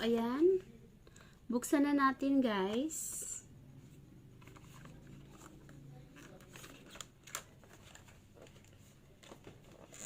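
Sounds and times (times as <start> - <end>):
packaging rustling and clicking: 4.4 - 10.0.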